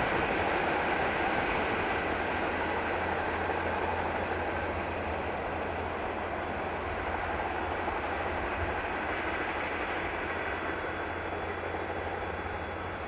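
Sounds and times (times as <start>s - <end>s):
freight train wheels on track: 0.0s - 13.0s.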